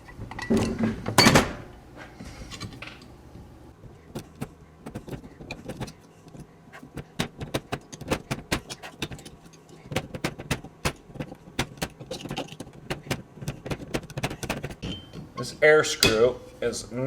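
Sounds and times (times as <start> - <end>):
scraper scraping gasket off metal: 3.8 - 14.8
scraper clicking on metal: 4.1 - 14.8.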